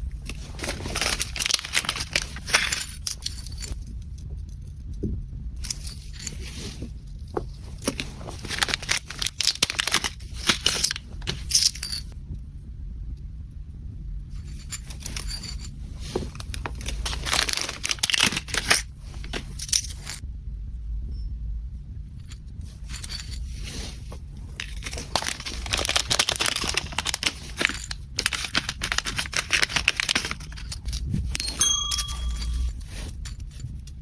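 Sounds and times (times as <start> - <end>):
wrapping paper crinkling and tearing: 0.0 - 3.7, 7.6 - 11.6, 16.0 - 20.1, 23.7 - 30.9
steady low hum: 0.0 - 34.0.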